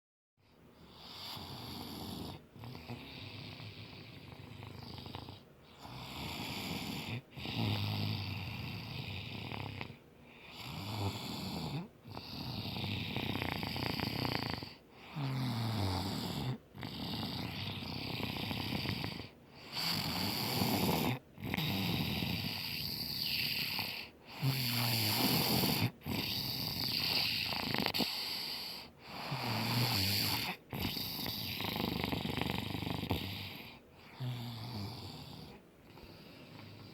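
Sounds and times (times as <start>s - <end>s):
child snoring heavily: 0.8s - 36.9s.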